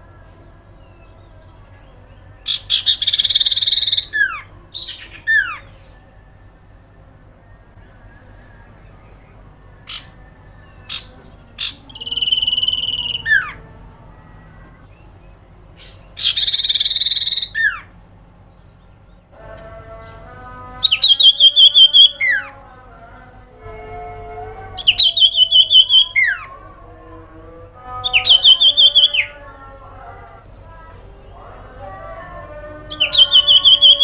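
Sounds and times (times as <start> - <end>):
bird buzzy trill: 2.4 - 5.8, 9.8 - 14.6, 15.8 - 18.0, 19.4 - 29.7, 32.8 - 34.0.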